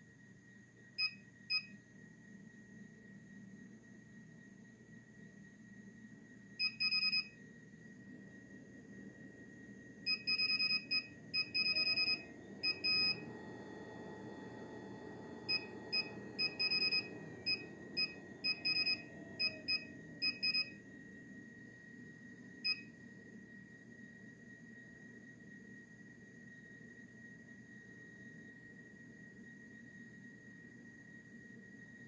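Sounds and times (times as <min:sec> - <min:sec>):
treadmill high-pitched whistle: 0:01.0 - 0:01.8, 0:10.1 - 0:20.9, 0:21.5 - 0:23.0
electronic beeps: 0:10.1 - 0:13.2, 0:15.5 - 0:20.8.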